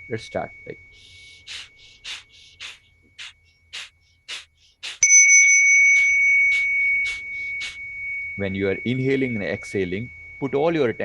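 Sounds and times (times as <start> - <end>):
quick forceful breathing: 1.0 - 5.0
bell ringing: 5.0 - 11.0.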